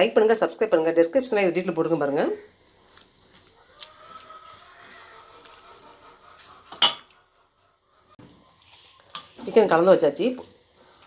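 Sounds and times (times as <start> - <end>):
faint background sounds: 0.0 - 11.0
kitchenware clatter: 6.7 - 7.1.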